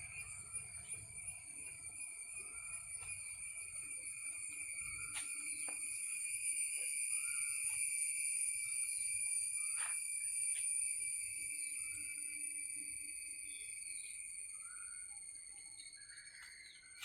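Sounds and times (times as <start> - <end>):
high-pitched insect drone: 0.0 - 17.0
sharp bird chirps: 13.4 - 17.0.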